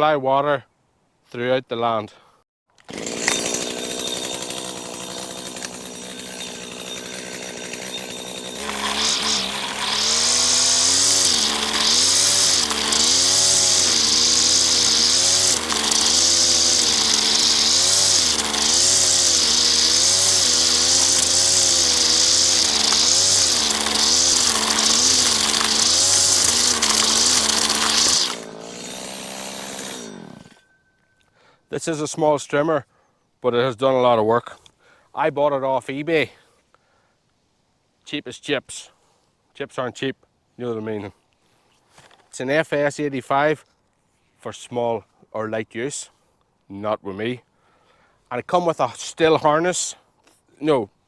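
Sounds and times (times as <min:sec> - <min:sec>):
strimmer engine cutting grass: 0:02.8 - 0:30.6.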